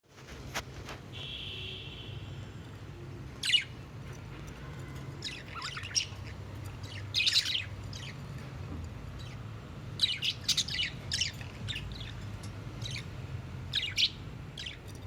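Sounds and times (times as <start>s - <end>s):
budgerigars chirping: 3.4s - 4.2s, 5.1s - 15.0s.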